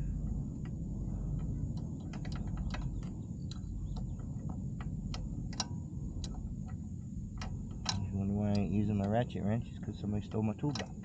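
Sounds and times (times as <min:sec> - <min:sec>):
low rumble: 0:00.0 - 0:11.0
wrench metal clicks and taps: 0:07.4 - 0:09.2, 0:10.7 - 0:11.0.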